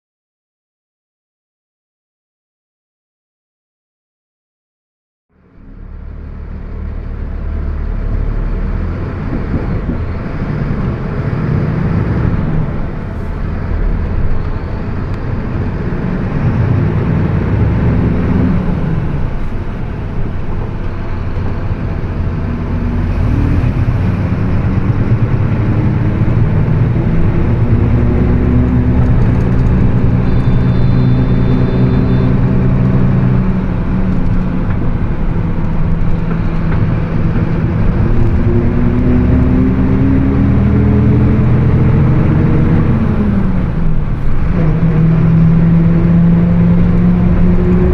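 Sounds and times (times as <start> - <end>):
bus engine pulling through gears: 5.3 - 47.9
differential droning: 5.3 - 47.9.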